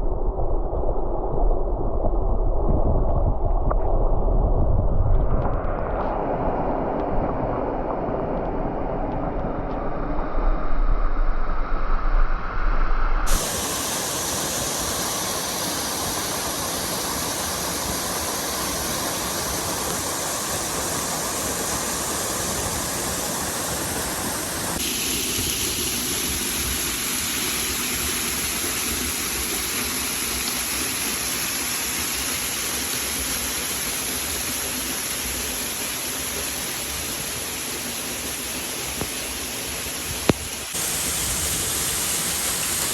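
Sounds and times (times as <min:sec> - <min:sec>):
waterfall rushing: 0:13.3 - 0:42.9.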